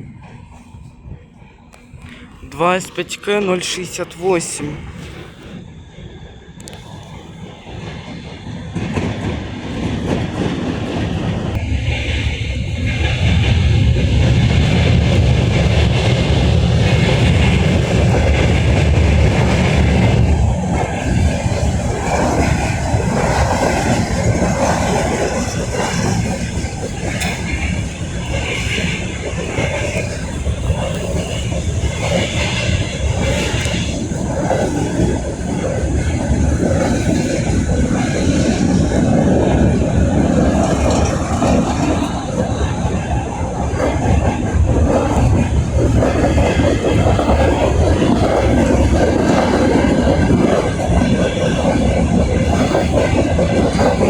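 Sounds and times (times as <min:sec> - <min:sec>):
faint clickety-clack: 0:12.8 - 0:39.2, 0:40.4 - 0:54.0.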